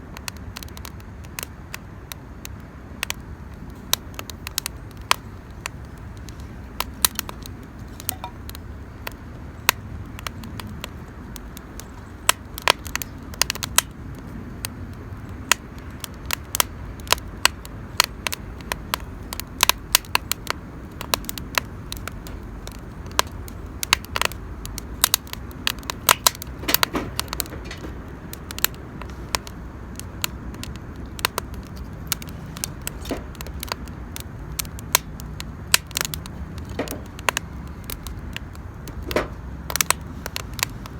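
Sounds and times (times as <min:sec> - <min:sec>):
campfire crackling and popping: 0:00.0 - 0:40.9.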